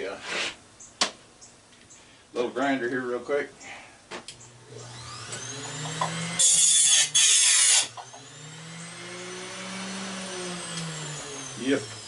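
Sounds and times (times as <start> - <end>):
electric grinder motor whine: 4.5 - 12.0.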